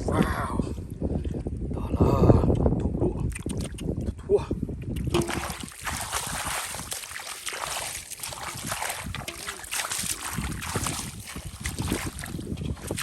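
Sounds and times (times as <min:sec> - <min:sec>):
muddy water splashing: 0:04.9 - 0:13.0.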